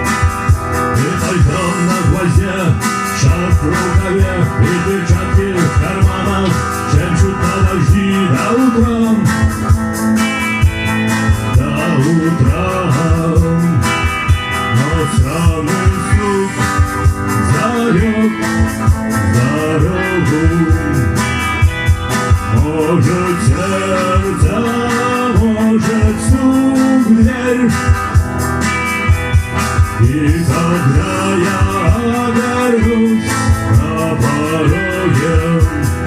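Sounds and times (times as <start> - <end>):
instrumental rock music: 0.0 - 36.0.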